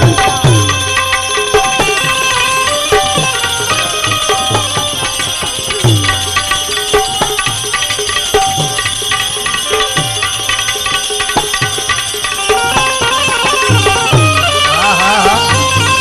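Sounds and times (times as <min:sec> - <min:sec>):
sustained melody tones: 0:00.0 - 0:16.0.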